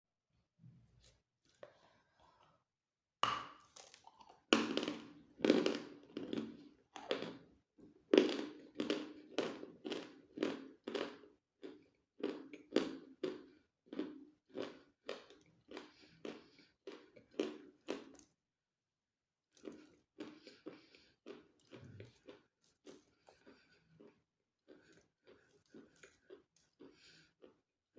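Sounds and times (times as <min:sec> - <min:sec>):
biting and chewing hard chalk: 0:19.5 - 0:27.7.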